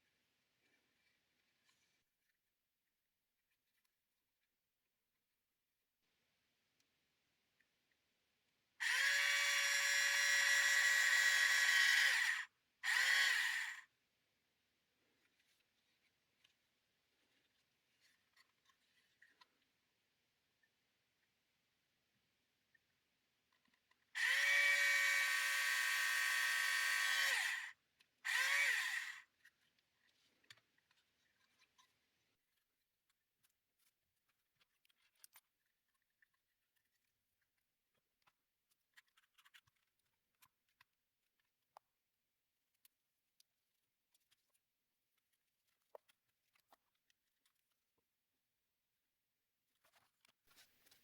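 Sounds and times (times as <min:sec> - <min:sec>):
small electric drill motor running: 0:08.8 - 0:13.9, 0:24.2 - 0:29.3.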